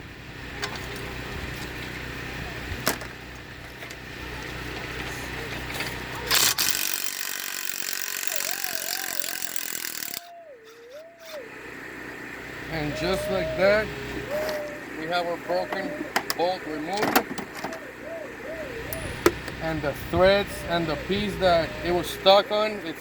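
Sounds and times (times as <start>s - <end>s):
steady low hum: 0.0s - 23.0s
impact wrench hammering: 6.3s - 10.3s.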